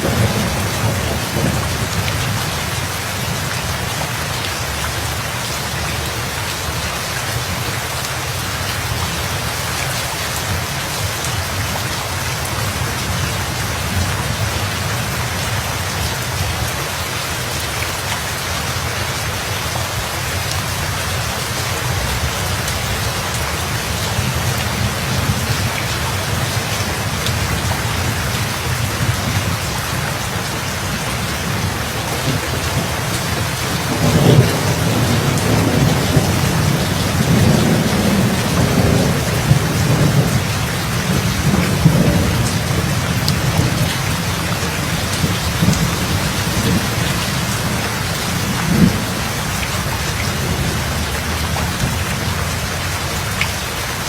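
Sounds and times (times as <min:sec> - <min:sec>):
rolling thunder: 0:00.0 - 0:03.5, 0:22.0 - 0:52.8
heavy rain: 0:00.0 - 0:54.0.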